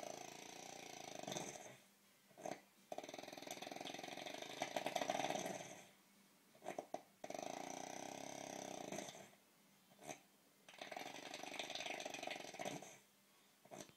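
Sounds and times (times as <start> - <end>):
person snoring: 0.0 - 1.8, 2.4 - 5.9, 6.6 - 9.4
snorting puffs: 0.0 - 6.0, 6.6 - 9.4, 10.0 - 13.9.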